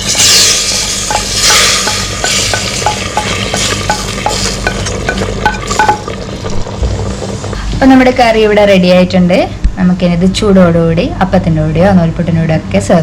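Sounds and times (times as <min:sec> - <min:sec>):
spices sizzling in oil: 0:00.0 - 0:07.5
spoon clinking against pan: 0:01.1 - 0:06.1.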